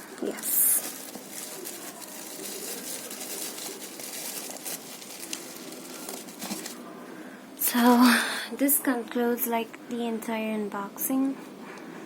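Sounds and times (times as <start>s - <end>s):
packaging rustling: 0.0s - 6.9s.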